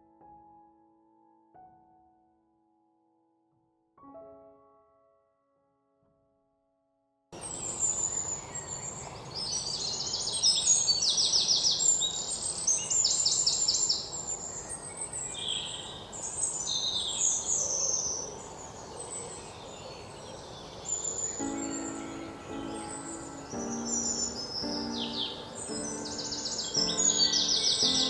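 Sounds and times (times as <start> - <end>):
birds singing and calling: 7.4 - 28.0
steady outdoor hiss: 7.4 - 28.0.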